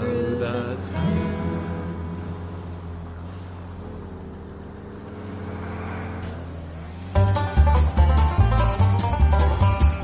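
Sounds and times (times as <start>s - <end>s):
upbeat instrumental music: 7.1s - 10.0s.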